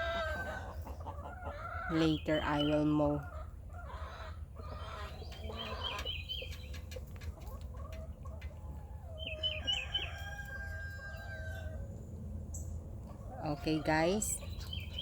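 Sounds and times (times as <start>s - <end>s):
chickens clucking: 0.0s - 15.0s
rooster crowing: 9.5s - 11.8s.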